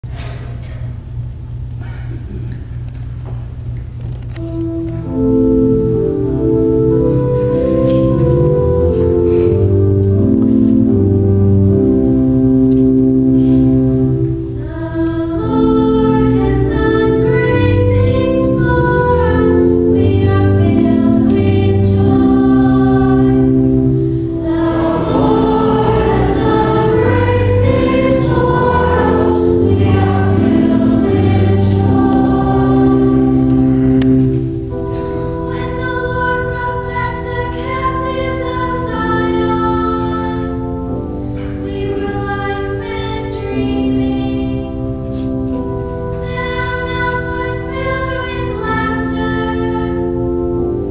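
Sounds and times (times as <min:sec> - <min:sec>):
organ chords: 0:00.0 - 0:50.9
choir singing a hymn: 0:13.1 - 0:50.9.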